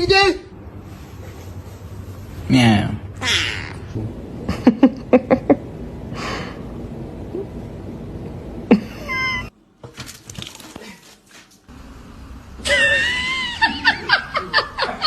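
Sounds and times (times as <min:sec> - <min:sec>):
cat meowing: 0:03.2 - 0:04.0.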